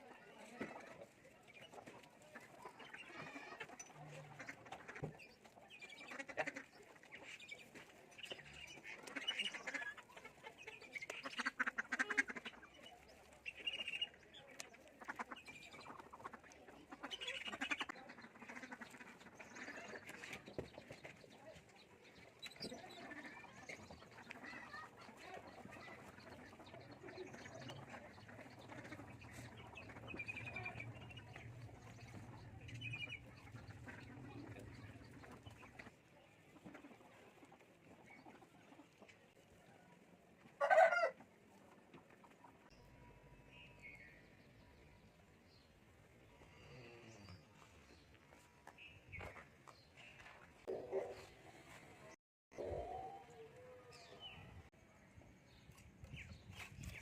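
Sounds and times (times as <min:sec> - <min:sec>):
ducks quacking: 0:01.7 - 0:14.2, 0:14.8 - 0:21.2, 0:22.6 - 0:39.1
poultry calling: 0:02.4 - 0:07.4.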